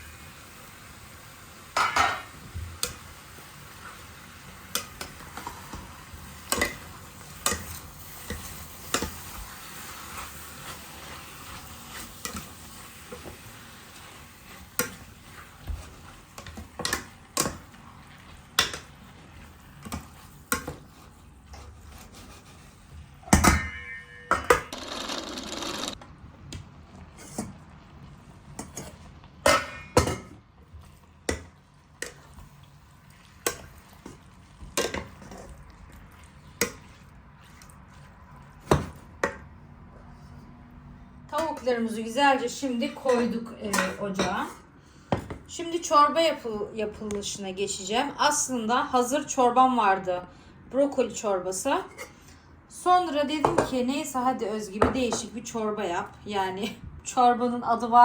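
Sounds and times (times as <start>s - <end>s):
cookware clinking and knocking: 1.8s - 2.3s, 23.3s - 25.0s, 29.4s - 30.4s.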